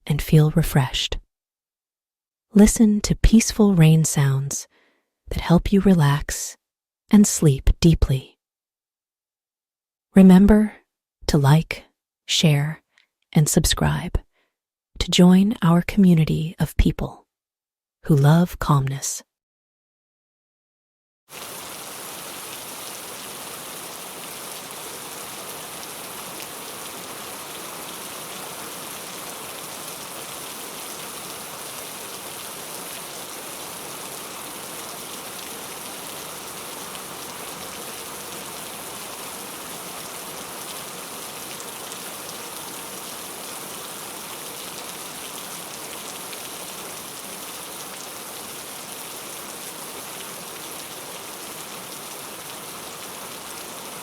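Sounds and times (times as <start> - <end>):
heavy rain falling: 21.3 - 54.0.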